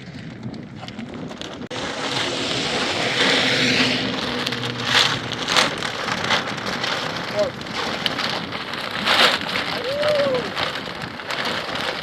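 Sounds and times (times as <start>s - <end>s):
loud rushing noise: 1.6s - 7.8s
vehicle engine running: 1.6s - 8.8s
sharp hissing surges: 1.7s - 4.9s.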